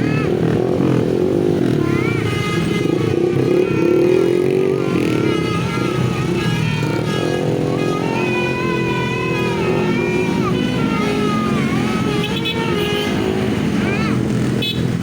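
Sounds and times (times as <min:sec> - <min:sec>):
bus engine running: 0:00.0 - 0:15.0
multi-tone air horn tune: 0:00.4 - 0:15.0.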